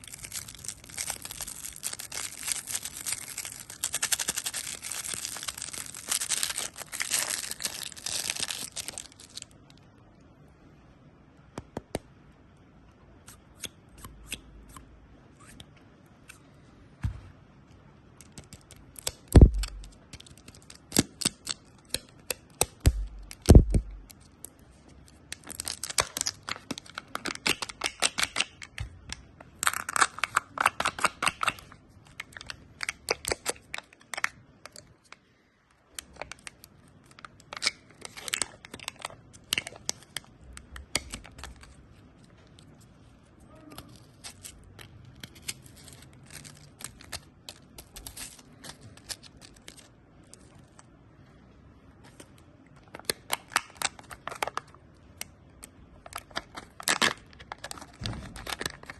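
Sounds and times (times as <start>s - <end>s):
hard candy crunching: 0.0s - 9.6s, 18.2s - 35.1s, 35.9s - 42.8s, 43.7s - 50.9s, 52.8s - 58.9s.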